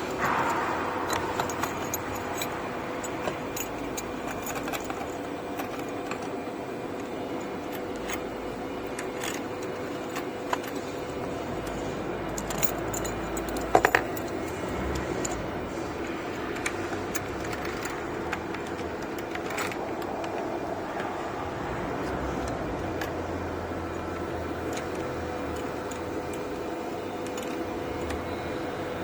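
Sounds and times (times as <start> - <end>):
sharp metallic clicks: 0.0 - 6.4
metal parts clinking and rattling: 0.0 - 21.5, 22.1 - 29.0
steady machine hum: 0.0 - 29.0.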